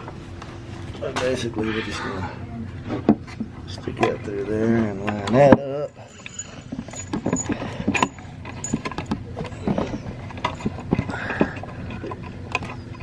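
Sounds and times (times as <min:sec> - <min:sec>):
clicks of hardware being handled: 0:06.2 - 0:13.0.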